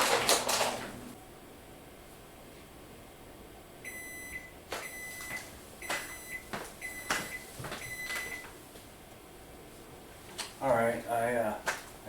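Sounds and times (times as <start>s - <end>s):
kitchen timer beeping: 3.9s - 8.4s.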